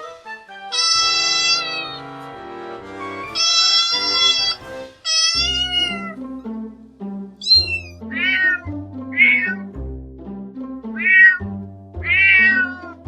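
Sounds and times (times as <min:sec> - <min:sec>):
background music: 0:00.0 - 0:13.0
cat meowing: 0:00.7 - 0:02.0, 0:03.3 - 0:06.2, 0:07.4 - 0:09.7, 0:11.0 - 0:11.4, 0:12.0 - 0:13.0.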